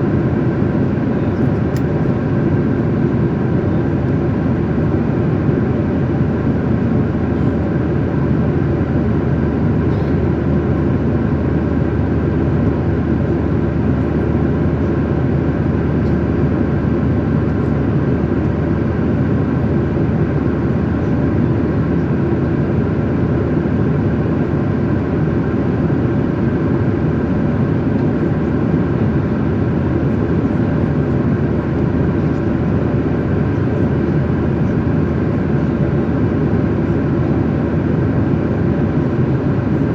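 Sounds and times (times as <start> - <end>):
jet airliner cabin noise: 0.0 - 39.9.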